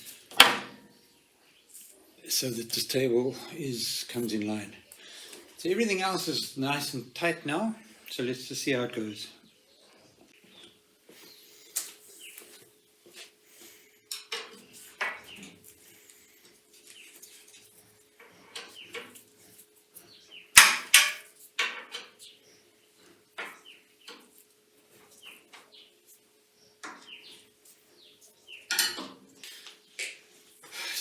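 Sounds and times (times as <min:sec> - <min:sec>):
metal tools clinking and clattering: 0:28.7 - 0:29.2.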